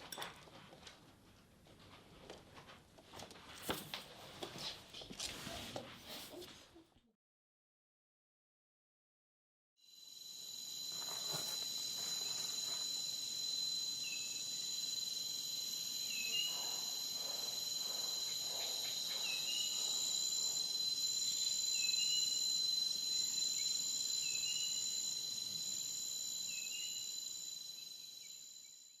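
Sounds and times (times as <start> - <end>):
high-pitched insect chorus: 9.9 - 29.0
short insect chirp: 9.9 - 29.0.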